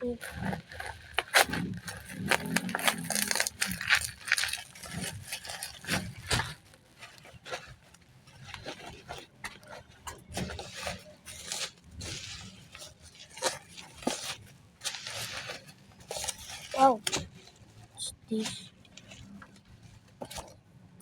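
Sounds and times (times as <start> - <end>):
packaging rustling and scraping: 0.0 - 20.7.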